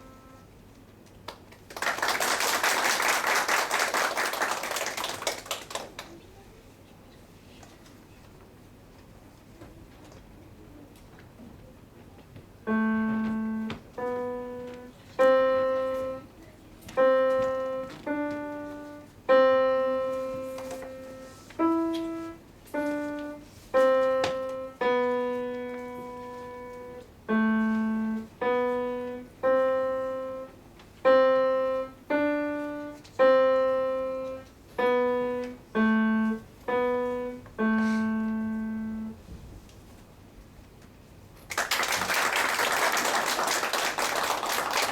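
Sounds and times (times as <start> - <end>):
slow piano melody: 0.0 - 0.7, 12.6 - 39.3.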